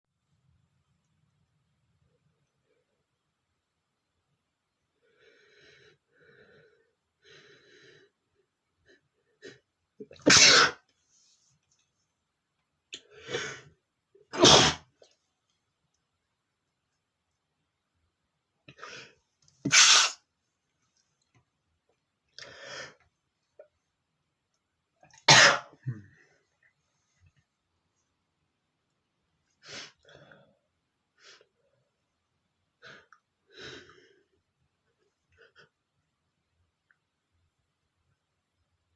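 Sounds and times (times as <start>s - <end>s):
man sneezing loudly: 10.2s - 10.8s, 14.3s - 14.9s, 19.7s - 20.2s, 25.3s - 26.0s.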